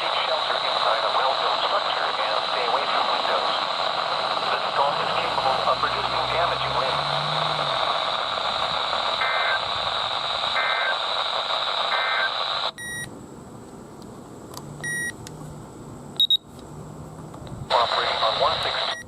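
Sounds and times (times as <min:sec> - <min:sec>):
radio hiss: 0:00.0 - 0:12.8, 0:17.7 - 0:19.0.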